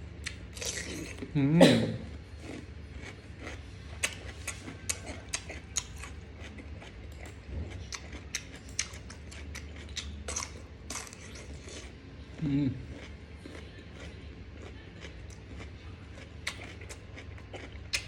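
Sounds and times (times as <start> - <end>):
wet crunchy chewing: 0.2 - 1.3, 2.1 - 18.0.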